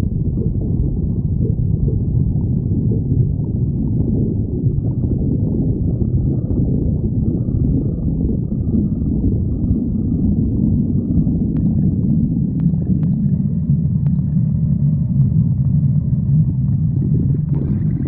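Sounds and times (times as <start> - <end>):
stomach growling: 0.0 - 18.0.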